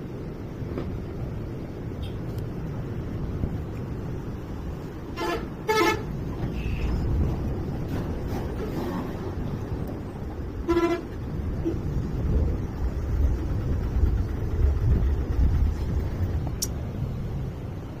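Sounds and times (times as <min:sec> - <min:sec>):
road traffic rumbling: 0:00.0 - 0:18.0
vehicle horn toot: 0:05.2 - 0:06.9, 0:10.6 - 0:11.1.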